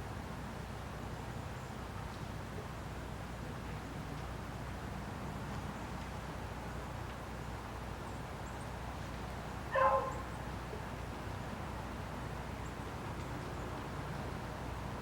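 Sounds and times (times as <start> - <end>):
animal yelping: 9.8 - 10.2.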